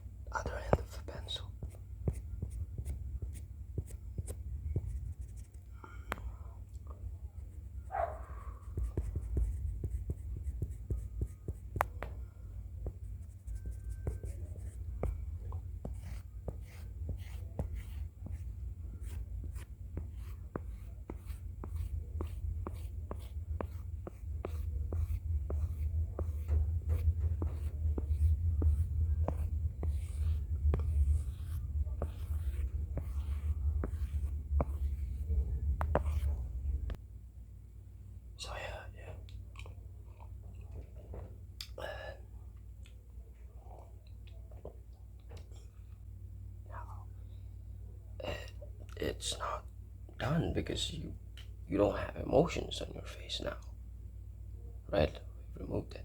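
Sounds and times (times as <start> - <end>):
pencil scratching on paper: 8.0 - 12.1, 12.9 - 37.0
low rubbing rumble: 8.6 - 37.0.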